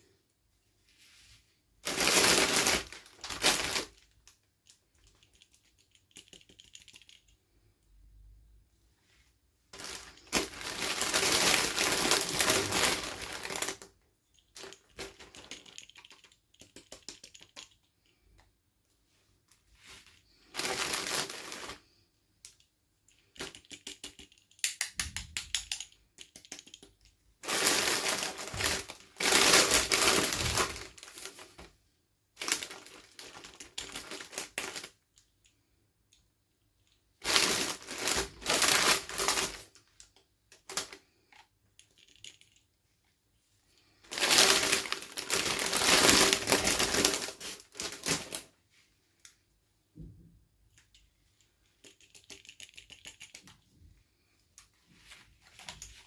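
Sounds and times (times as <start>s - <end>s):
plastic packaging crackling: 1.8s - 4.3s, 9.8s - 13.9s, 20.3s - 21.8s, 27.4s - 31.7s, 32.4s - 35.0s, 37.2s - 39.8s, 44.0s - 48.5s.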